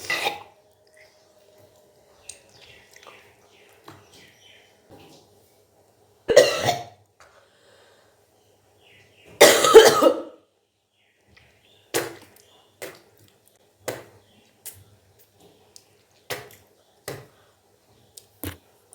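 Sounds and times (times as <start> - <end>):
person retching and vomiting: 0.0 - 0.5, 6.3 - 6.9, 9.4 - 10.4
short coughs: 6.3 - 7.0, 9.4 - 10.4.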